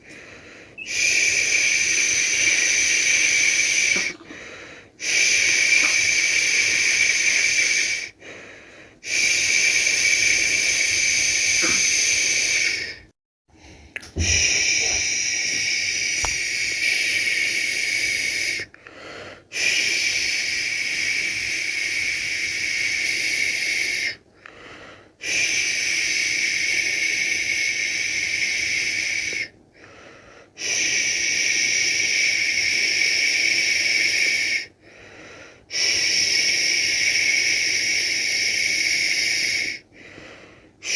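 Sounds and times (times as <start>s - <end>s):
person shushing a baby: 10.8s - 13.0s.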